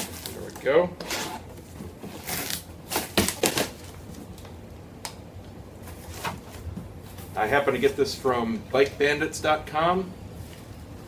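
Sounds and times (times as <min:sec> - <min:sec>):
cardboard rustling and scraping: 0:00.0 - 0:04.4, 0:05.8 - 0:08.0.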